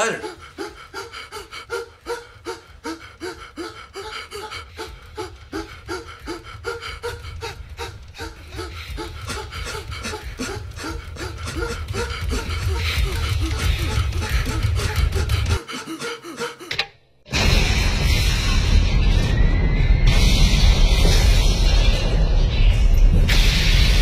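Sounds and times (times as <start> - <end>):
person panting heavily: 0.0 - 16.8.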